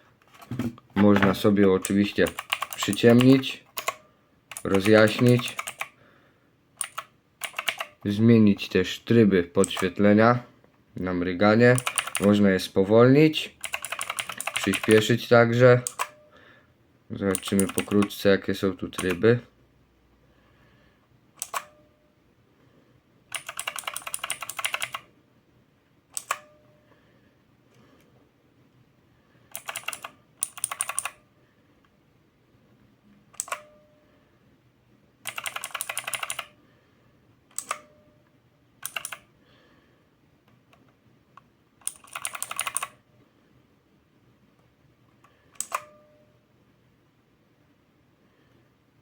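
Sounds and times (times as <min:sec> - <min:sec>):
mechanical keyboard clicking: 0:01.1 - 0:05.9, 0:06.8 - 0:08.0, 0:09.6 - 0:09.9, 0:11.7 - 0:12.4, 0:13.6 - 0:15.1, 0:17.3 - 0:18.2, 0:18.9 - 0:19.2, 0:21.4 - 0:21.7, 0:23.3 - 0:25.1, 0:26.2 - 0:26.4, 0:29.5 - 0:31.2, 0:33.4 - 0:33.7, 0:35.2 - 0:36.5, 0:37.5 - 0:37.8, 0:38.8 - 0:39.2, 0:41.8 - 0:43.0.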